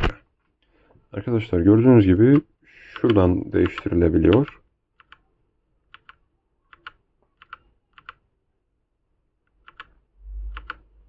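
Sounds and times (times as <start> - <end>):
mechanical keyboard key presses: 3.0 - 5.3, 5.9 - 8.2, 9.6 - 10.8.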